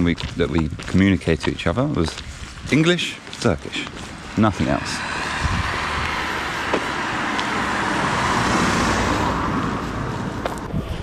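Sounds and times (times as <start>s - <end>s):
car driving past: 4.7s - 10.7s.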